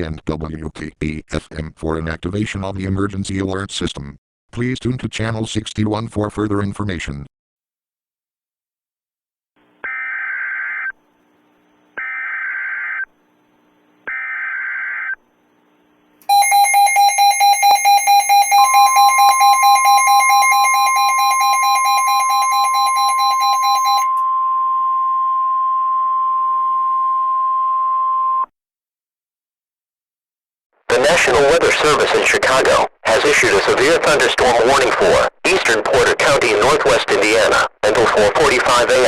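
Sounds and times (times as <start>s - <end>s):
pulsing electronic alert tone: 16.3s - 24.2s
steady alarm tone: 16.3s - 26.2s
warbling data bursts: 18.1s - 24.1s.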